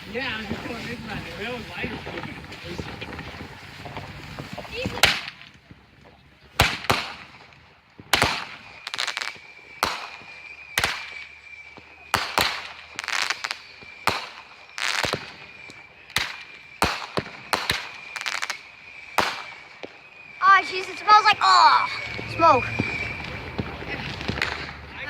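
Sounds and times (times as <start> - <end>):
fireworks bangs: 0.0 - 25.0
high whistling tone: 8.6 - 24.7.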